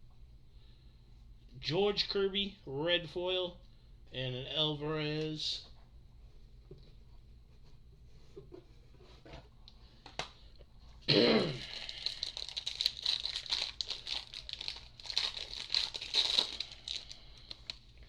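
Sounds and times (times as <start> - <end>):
wrapper ripping: 11.6 - 17.8
wrapper crinkling and rustling: 11.6 - 17.9.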